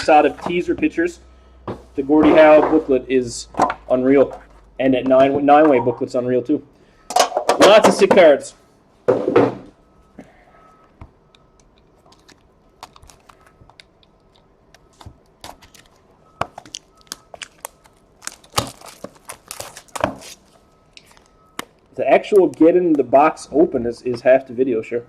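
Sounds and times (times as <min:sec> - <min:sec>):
cardboard and plastic tearing: 0:12.1 - 0:13.9, 0:14.9 - 0:21.3.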